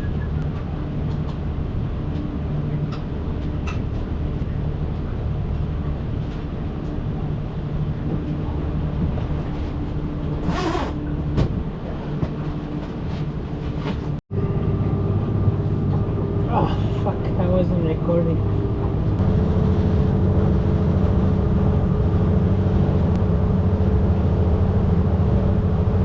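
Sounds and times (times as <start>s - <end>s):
boat motor humming: 0.0s - 26.0s.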